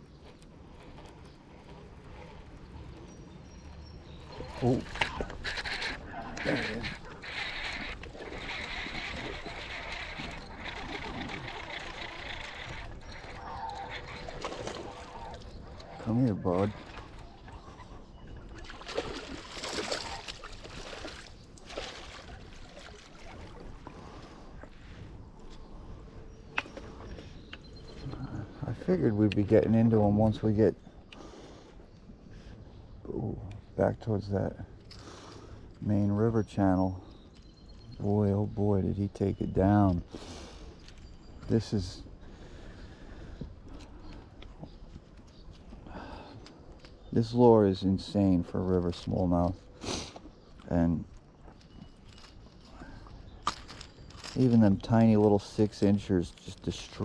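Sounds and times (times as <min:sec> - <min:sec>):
fish splashing in water: 0:18.6 - 0:23.6.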